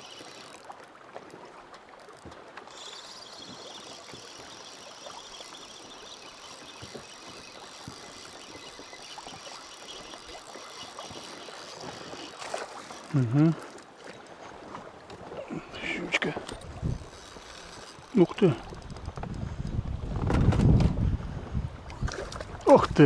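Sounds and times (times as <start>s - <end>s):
water lapping against boat hull: 0.0s - 23.0s
wind: 0.0s - 23.0s
small knocks and ticks: 2.0s - 14.4s, 16.2s - 20.9s.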